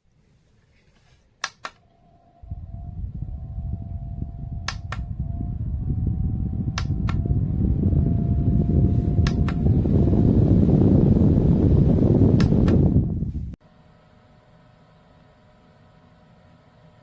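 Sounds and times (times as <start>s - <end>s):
fan air rushing: 1.4s - 17.0s
faint motor whine: 1.8s - 17.0s
fan button double click: 4.6s - 5.2s, 6.7s - 7.3s, 9.1s - 9.7s, 12.4s - 13.0s.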